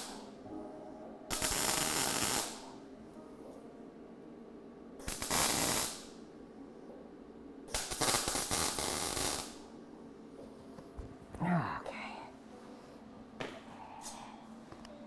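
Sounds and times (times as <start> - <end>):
arc welding crackling: 0.0 - 0.3, 1.3 - 2.8, 5.0 - 6.2, 7.7 - 9.7.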